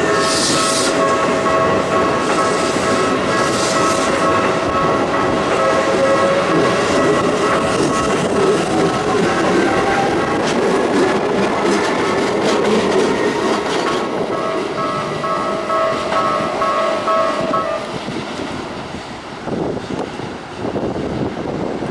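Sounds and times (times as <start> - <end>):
level crossing warning bell: 0.0 - 10.3, 14.2 - 18.0
train wheels clacking over rail joints: 0.0 - 18.7.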